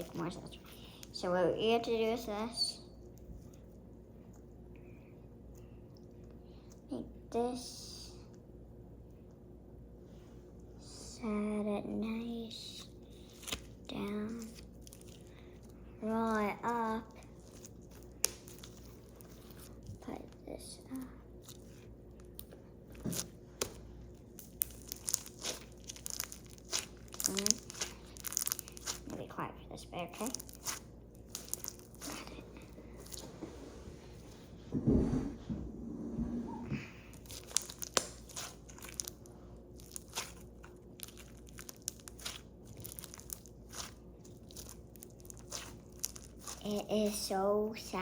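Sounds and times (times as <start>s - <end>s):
slime crackling and popping: 13.2s - 15.7s, 16.3s - 20.4s, 21.4s - 29.4s, 30.0s - 32.4s, 37.1s - 48.0s
slime crackling pops: 37.2s - 39.2s.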